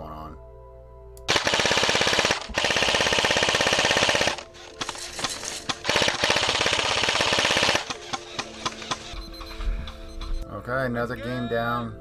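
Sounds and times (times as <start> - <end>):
airsoft gun full-auto bursts: 1.3 - 9.2.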